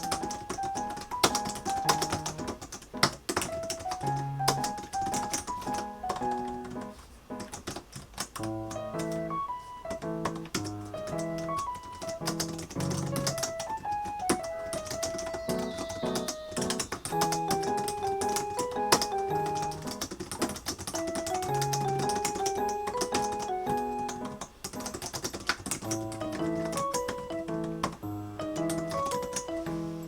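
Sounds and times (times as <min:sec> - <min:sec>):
keyboard typing clicks: 0:00.0 - 0:29.8
piano background music: 0:00.0 - 0:30.0.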